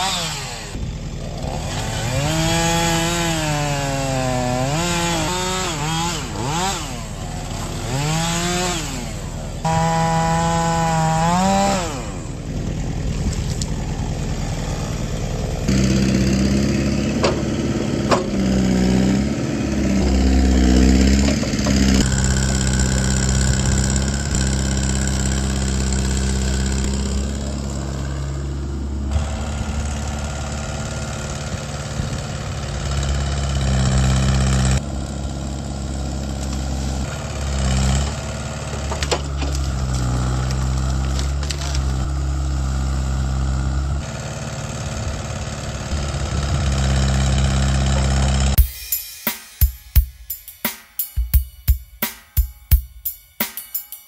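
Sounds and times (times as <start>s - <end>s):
chainsaw revving: 0.0s - 49.6s
engines running low rumble: 0.4s - 3.0s, 6.2s - 48.6s.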